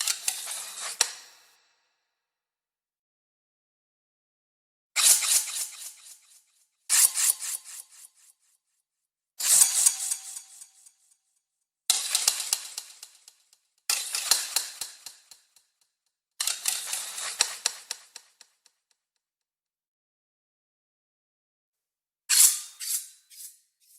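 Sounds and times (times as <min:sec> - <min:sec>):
sword drawn from scabbard: 0:05.0 - 0:08.3, 0:22.3 - 0:23.6.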